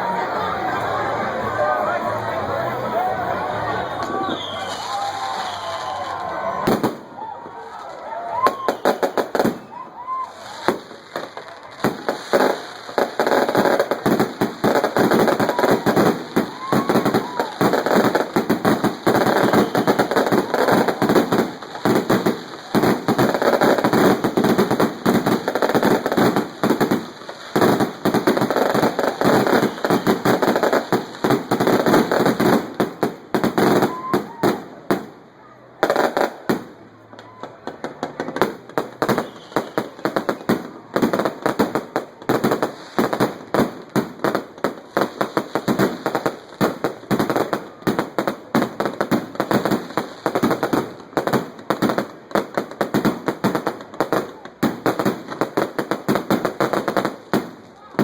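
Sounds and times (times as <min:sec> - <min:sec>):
firecrackers popping: 0:03.9 - 0:58.0.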